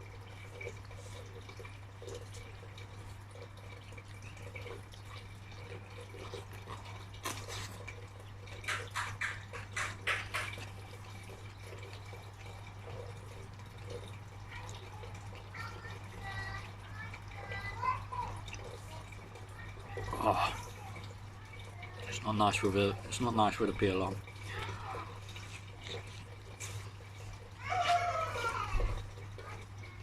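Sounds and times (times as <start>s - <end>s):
crunchy biting and chewing: 6.2s - 8.0s.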